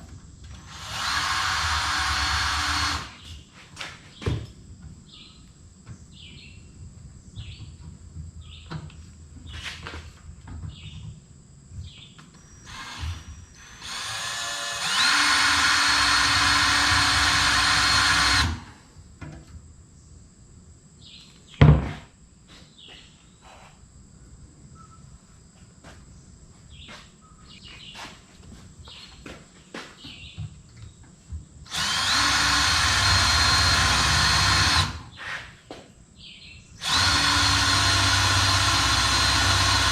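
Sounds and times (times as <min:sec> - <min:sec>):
power drill whine: 0:00.5 - 0:03.3, 0:12.3 - 0:18.8, 0:31.7 - 0:35.5, 0:36.8 - 0:39.9.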